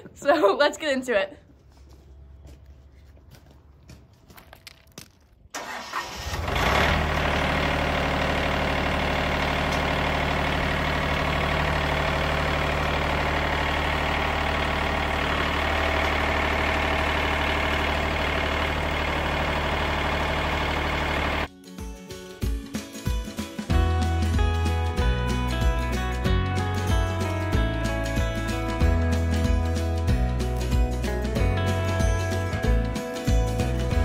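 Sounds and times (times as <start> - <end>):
sawmill engine running: 5.6 - 21.5.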